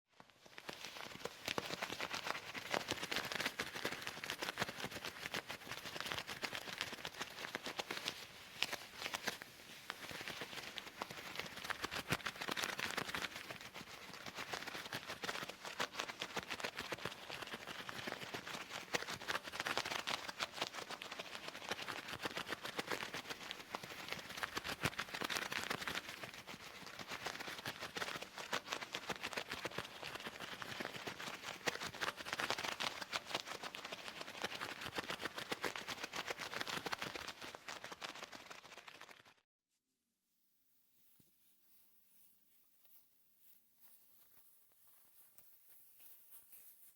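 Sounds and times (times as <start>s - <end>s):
leather gloves rustling: 0.4s - 20.1s.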